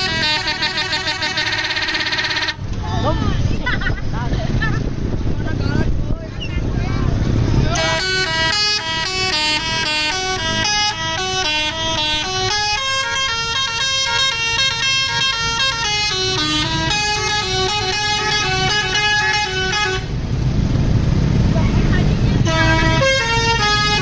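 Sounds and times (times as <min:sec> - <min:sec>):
melodic bus air horn: 0:00.0 - 0:02.7, 0:07.7 - 0:20.2, 0:22.4 - 0:24.0
engine and road noise: 0:00.0 - 0:24.0.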